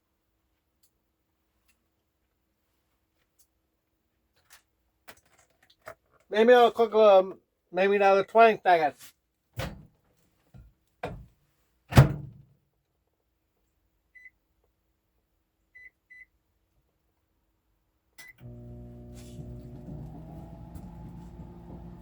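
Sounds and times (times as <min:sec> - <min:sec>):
microwave oven humming: 0:18.4 - 0:22.0
microwave door shutting: 0:18.5 - 0:22.0.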